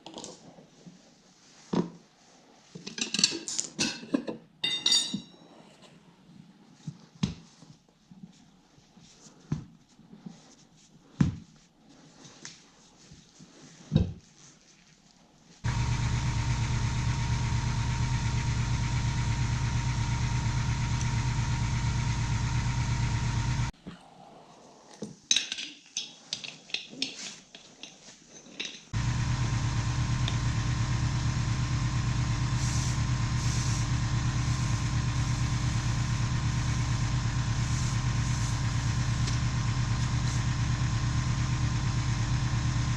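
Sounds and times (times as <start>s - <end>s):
electric air compressor humming: 15.6s - 23.7s, 29.0s - 42.9s.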